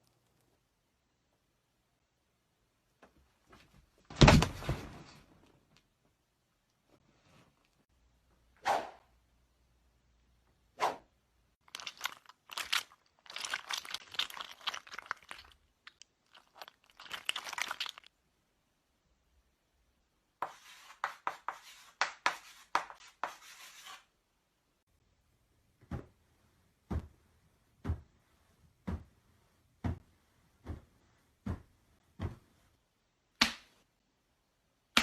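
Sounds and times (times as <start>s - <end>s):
material crunching and crackling: 11.6s - 18.1s.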